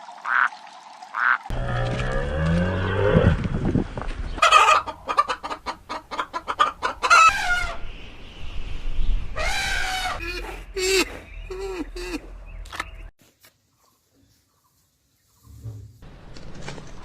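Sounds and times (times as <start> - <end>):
chickens clucking: 4.3 - 7.8
chicken squawking: 4.4 - 7.8, 9.4 - 12.3.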